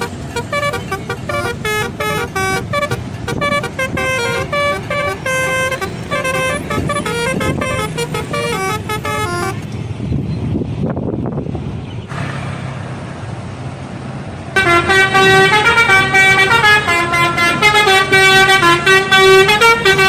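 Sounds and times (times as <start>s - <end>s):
air horn playing a tune: 0.0s - 9.6s, 14.6s - 20.0s
bus engine rumble: 0.0s - 20.0s
road noise: 0.0s - 20.0s.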